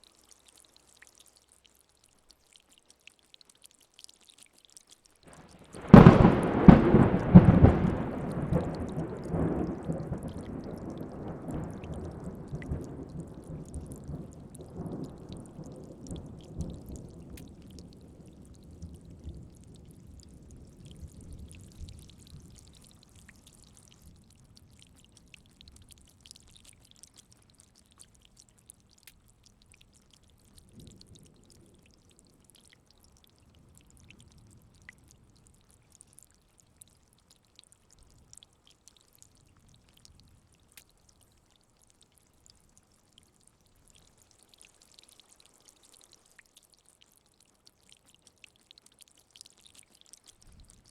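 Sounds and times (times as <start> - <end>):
steady rain: 0.0 - 50.9
water drips: 0.0 - 50.9
thunder rumbling: 5.6 - 22.5.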